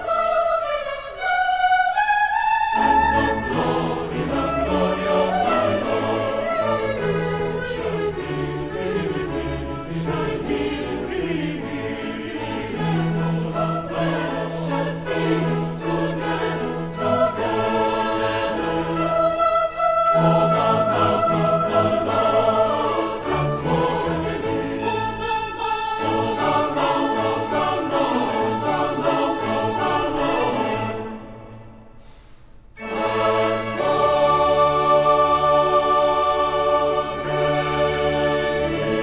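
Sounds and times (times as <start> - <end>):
orchestral accompaniment: 0.0 - 31.8, 32.8 - 39.0
choir singing: 0.0 - 32.2, 32.8 - 39.0.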